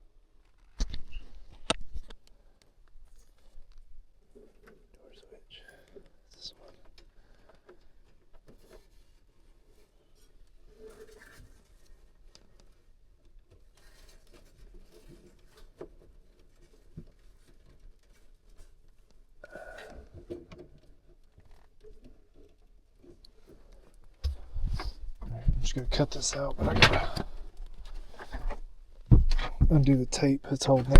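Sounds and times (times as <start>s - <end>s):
hands handling wiring: 20.0s - 30.9s.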